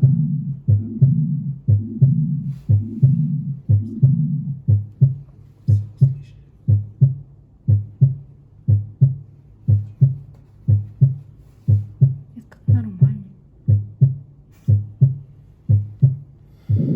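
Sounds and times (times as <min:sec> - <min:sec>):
heartbeat lub-dub: 0:00.0 - 0:16.9
low heart murmur: 0:00.0 - 0:16.9.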